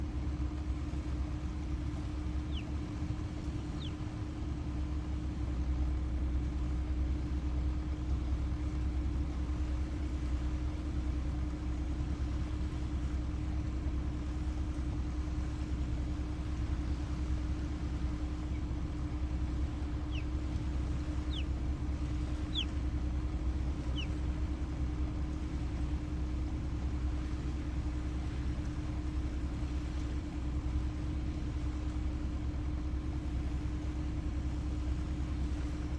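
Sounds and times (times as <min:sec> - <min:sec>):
low mechanical hum: 0:00.0 - 0:35.9.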